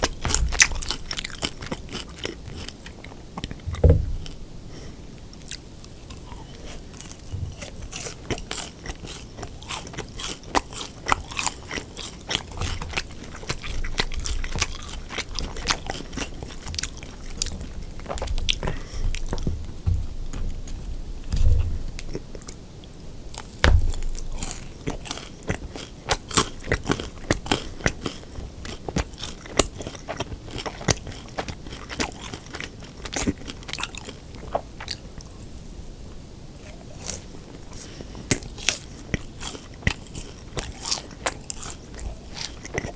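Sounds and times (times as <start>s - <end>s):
person chewing crunchy food: 0.0s - 35.7s, 36.6s - 42.9s
low thumps: 3.6s - 4.6s, 18.2s - 22.3s.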